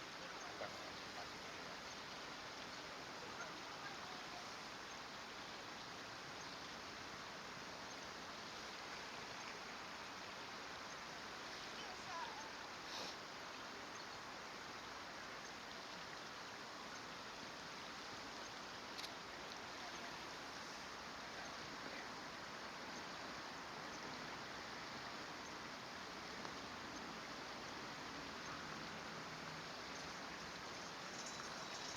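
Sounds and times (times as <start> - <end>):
flowing water rushing: 0.0 - 31.9.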